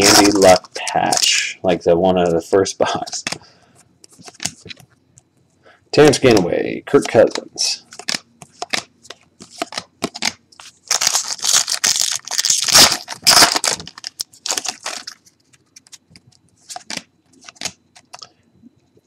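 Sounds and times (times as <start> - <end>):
wrapper rustling: 0.0 - 1.4, 7.9 - 18.2
card pack wrapper tearing: 0.0 - 1.5, 7.1 - 18.2.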